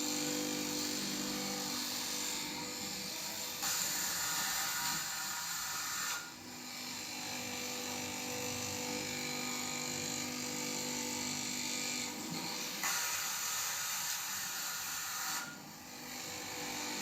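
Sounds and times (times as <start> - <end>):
cutting machine motor hum: 0.0 - 15.0.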